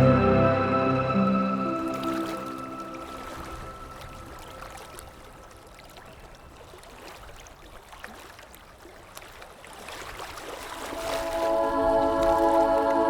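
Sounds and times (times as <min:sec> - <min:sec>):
soft sustained music tones: 0:00.0 - 0:06.0, 0:10.9 - 0:13.0
water drips: 0:00.0 - 0:08.5
water trickling and lapping: 0:01.2 - 0:13.0.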